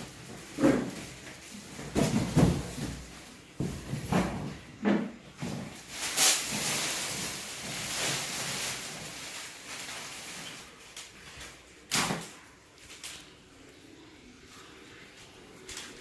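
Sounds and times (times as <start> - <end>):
packaging rustling scrape: 5.4 - 11.6.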